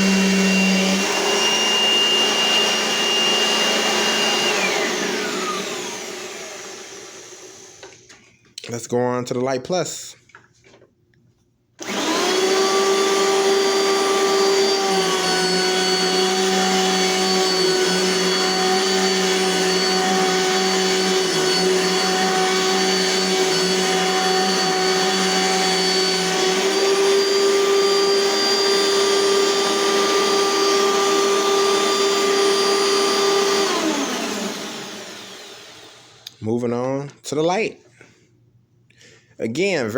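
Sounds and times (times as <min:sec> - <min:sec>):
vacuum cleaner motor whining: 0:00.0 - 0:08.2, 0:11.8 - 0:36.3.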